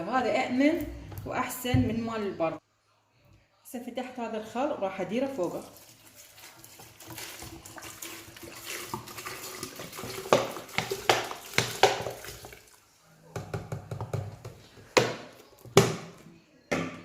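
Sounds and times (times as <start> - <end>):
liquid pouring into a jar: 5.4 - 12.9.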